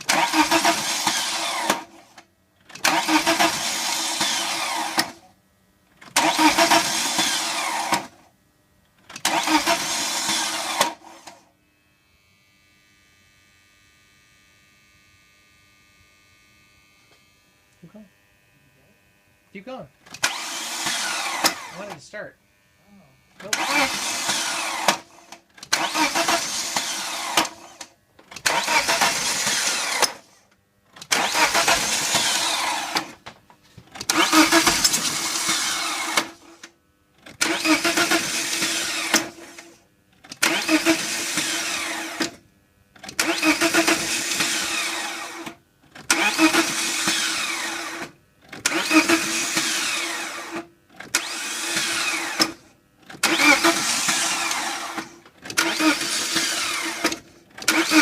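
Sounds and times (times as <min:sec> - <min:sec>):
car engine cranking on starter: 0:00.0 - 0:05.3, 0:06.0 - 0:08.3, 0:09.0 - 0:11.4, 0:20.0 - 0:22.0, 0:23.4 - 0:33.3, 0:33.9 - 0:58.0.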